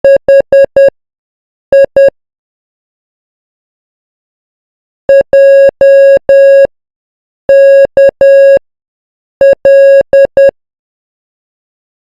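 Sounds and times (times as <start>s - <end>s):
morse code beeps: 0.0s - 0.9s, 1.8s - 2.1s, 5.1s - 6.7s, 7.5s - 8.6s, 9.4s - 10.5s.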